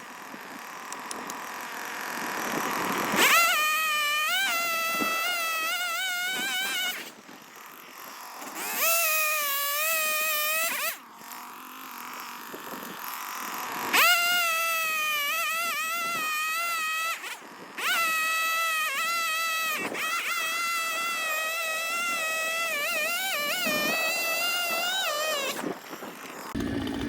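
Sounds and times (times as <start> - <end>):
chainsaw revving: 0.0 - 27.0.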